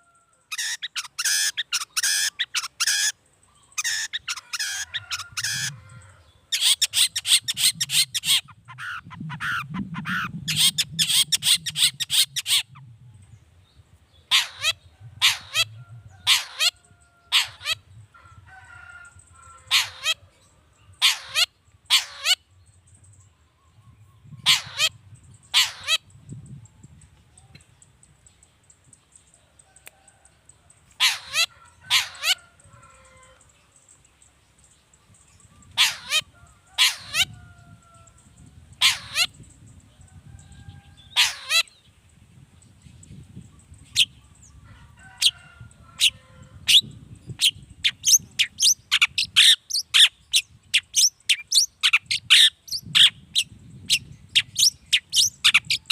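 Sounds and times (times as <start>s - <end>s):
bird harsh rattling calls: 0.5s - 5.8s, 6.5s - 12.8s, 14.3s - 17.8s, 19.4s - 20.2s, 21.0s - 22.4s, 24.4s - 26.1s, 31.0s - 33.3s, 35.7s - 37.3s, 38.8s - 39.4s, 41.1s - 41.7s, 47.4s - 53.2s.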